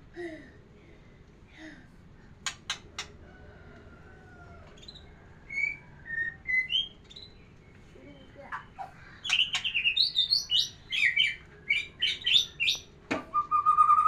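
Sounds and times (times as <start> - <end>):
bird singing: 4.7 - 14.0.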